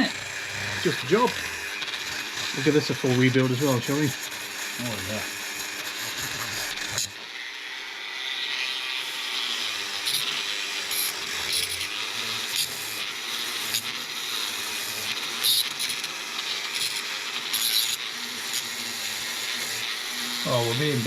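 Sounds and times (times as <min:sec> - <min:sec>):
metal being scrubbed: 0:00.0 - 0:07.1.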